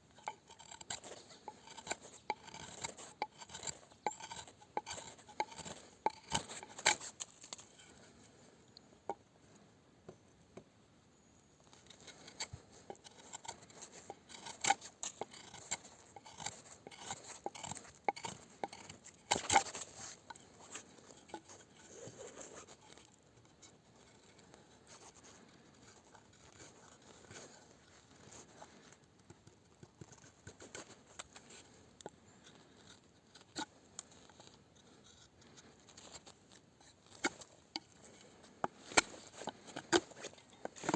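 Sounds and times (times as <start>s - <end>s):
knife scraping and cutting: 0.1s - 8.2s, 11.9s - 23.1s, 32.4s - 40.9s.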